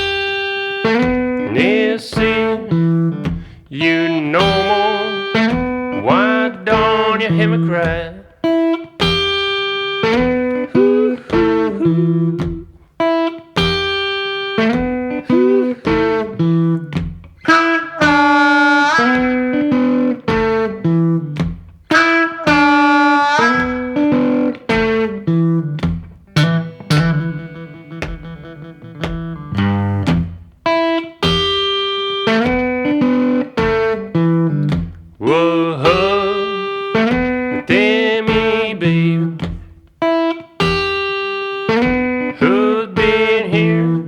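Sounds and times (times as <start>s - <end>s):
blues guitar riff: 0.0s - 44.0s
sharp percussive hits: 25.8s - 34.0s.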